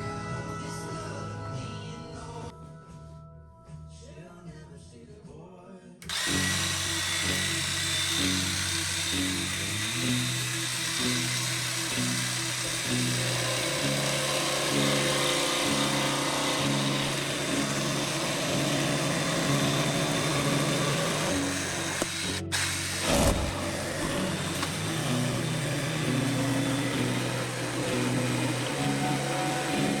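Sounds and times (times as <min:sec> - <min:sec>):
background music: 0:00.0 - 0:30.0
jigsaw cutting wood: 0:06.0 - 0:30.0.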